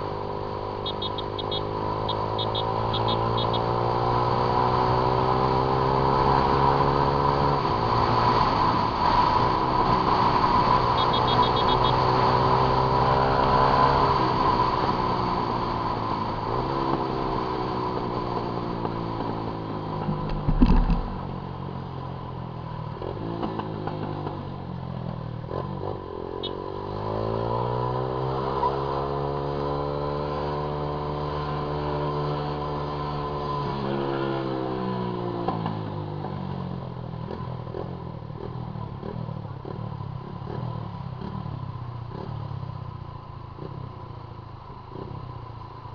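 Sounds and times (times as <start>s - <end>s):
motorcycle engine revving: 0.0s - 42.9s
loud thump: 20.4s - 21.3s.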